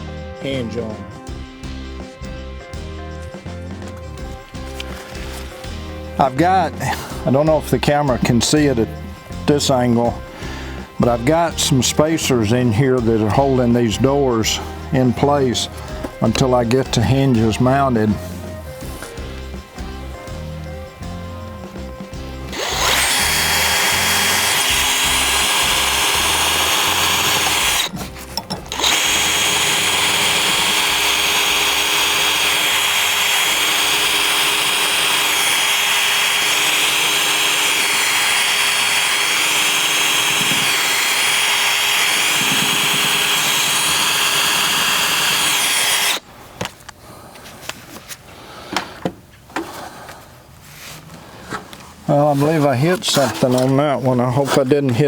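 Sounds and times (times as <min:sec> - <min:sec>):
electric drill boring into wood: 0:04.2 - 0:18.1, 0:18.8 - 0:46.2.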